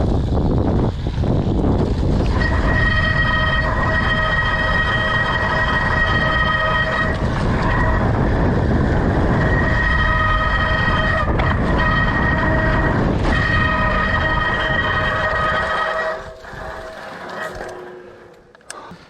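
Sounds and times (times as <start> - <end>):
wind rumble: 0.0 - 18.7
brakes squealing: 0.0 - 19.0
rolling noise: 0.0 - 19.0.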